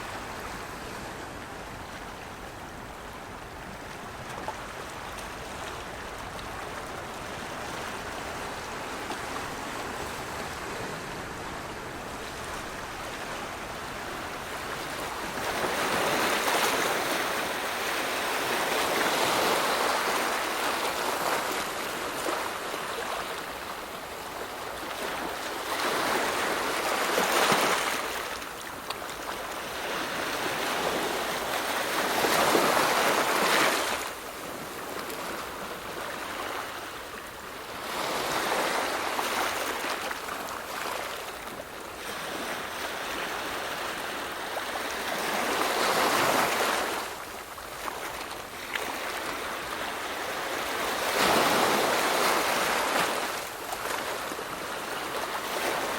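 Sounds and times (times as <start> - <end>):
waves breaking and washing in: 0.0 - 55.9.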